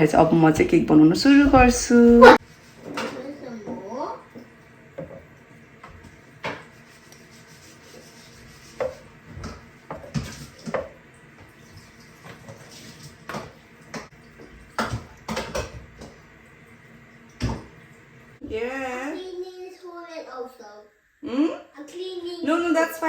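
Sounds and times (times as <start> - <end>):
dishes and utensils clattering: 12.2 - 16.2.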